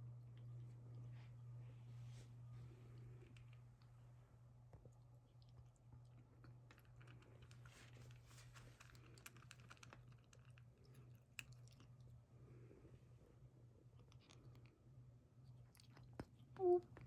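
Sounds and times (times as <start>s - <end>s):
low steady hum: 0.0s - 17.0s
cat chewing food: 4.6s - 12.6s, 13.4s - 17.0s.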